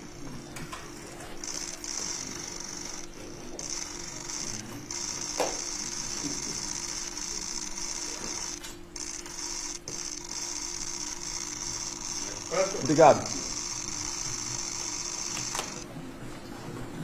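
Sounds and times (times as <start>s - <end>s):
room noise hum: 0.0s - 17.0s
camera shutters firing: 15.2s - 15.8s.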